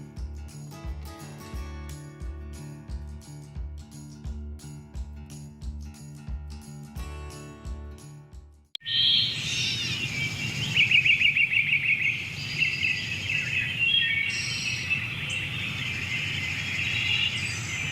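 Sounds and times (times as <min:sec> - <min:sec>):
small birds chirping: 0:08.8 - 0:17.9.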